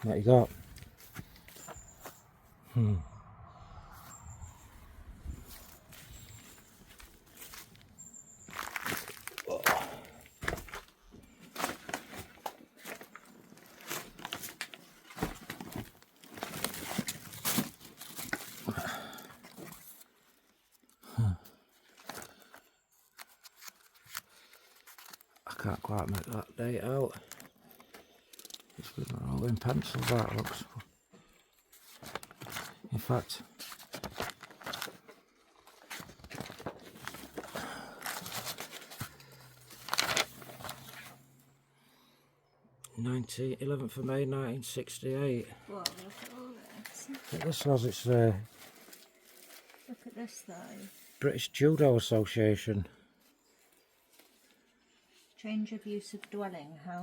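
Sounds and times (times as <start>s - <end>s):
low sound falling in pitch: 2.6s - 5.5s
paper sheets rustling and crackling: 5.4s - 9.5s, 10.4s - 18.8s, 21.9s - 26.4s, 27.2s - 30.8s, 31.7s - 41.3s, 45.8s - 51.2s.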